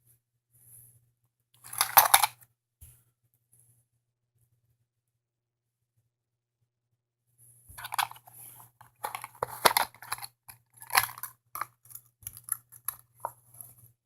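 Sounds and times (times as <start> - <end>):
plastic toy parts clicking: 1.6 - 2.4, 7.8 - 13.3.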